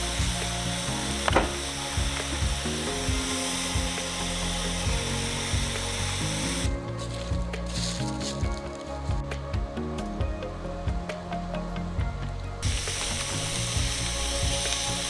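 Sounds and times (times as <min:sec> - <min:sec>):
hissing layer: 0:00.0 - 0:10.0, 0:12.6 - 0:15.0
background music with steady beat: 0:00.0 - 0:15.0.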